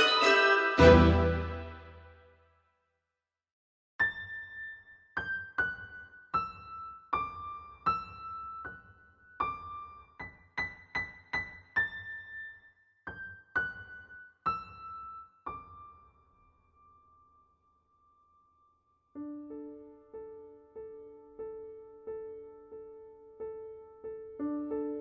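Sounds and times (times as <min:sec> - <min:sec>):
keyboard melody: 0:00.0 - 0:02.2.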